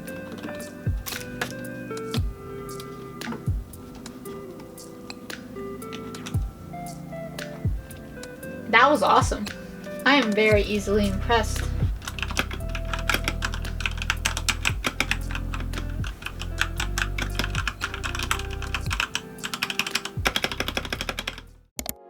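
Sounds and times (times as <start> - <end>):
background music with bass line: 0.0 - 19.5
fast typing on keyboard: 12.0 - 21.5.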